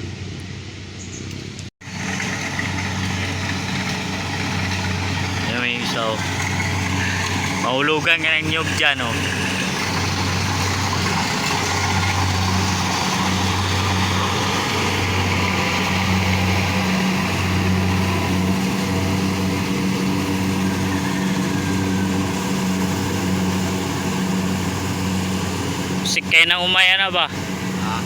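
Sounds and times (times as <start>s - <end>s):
small engine humming: 1.2s - 28.0s.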